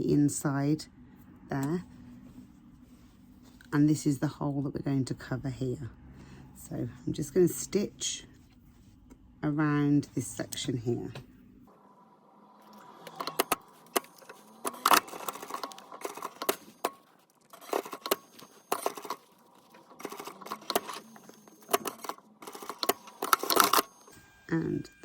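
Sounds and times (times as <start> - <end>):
sewing machine stitching: 12.7 - 25.0.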